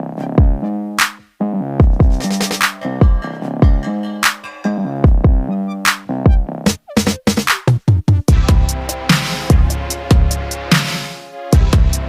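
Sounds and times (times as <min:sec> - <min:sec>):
electronic music with drum-machine beat: 0:00.0 - 0:12.0
held synth tones: 0:02.2 - 0:06.4
deep bass kicks: 0:05.1 - 0:05.5, 0:08.3 - 0:08.9, 0:11.6 - 0:12.0.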